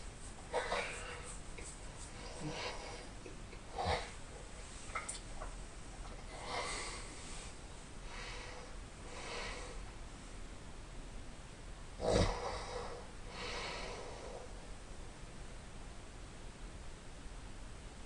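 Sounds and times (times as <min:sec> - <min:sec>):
loud snort: 0:12.0 - 0:12.8.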